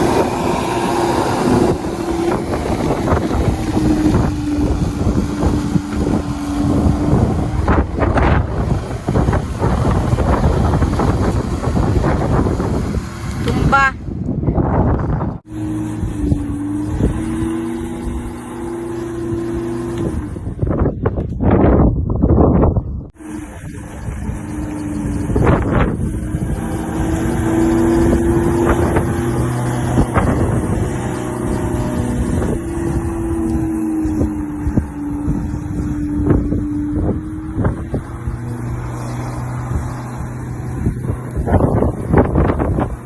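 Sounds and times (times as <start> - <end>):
electric lawnmower running: 0.0 - 14.0, 23.2 - 43.0.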